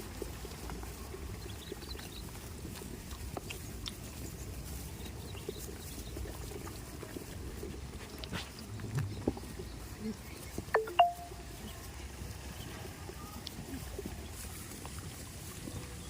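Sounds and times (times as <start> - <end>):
goats moving about: 0.0 - 16.0.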